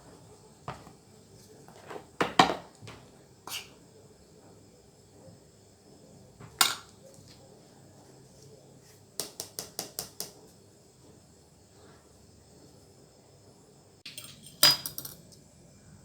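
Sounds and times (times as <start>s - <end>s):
utensil clinking on a dish: 6.4s - 7.0s, 14.0s - 15.4s
utensil tapping on dishware: 9.2s - 10.4s.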